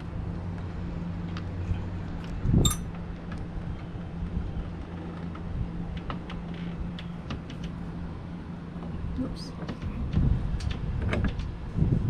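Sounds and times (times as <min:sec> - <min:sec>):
steady low hum: 0:00.0 - 0:12.0
metallic clink: 0:02.6 - 0:02.9.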